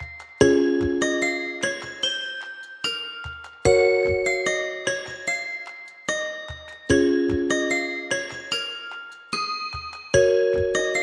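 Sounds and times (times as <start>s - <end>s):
bell-like keyboard chords: 0.0s - 2.4s, 3.0s - 5.6s, 6.9s - 9.0s, 9.7s - 11.0s.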